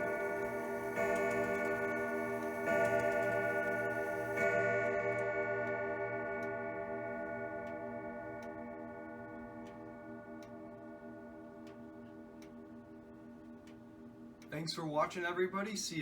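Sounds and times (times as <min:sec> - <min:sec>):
clock ticking: 0:00.0 - 0:06.6
clock chime rods ringing: 0:00.0 - 0:10.9.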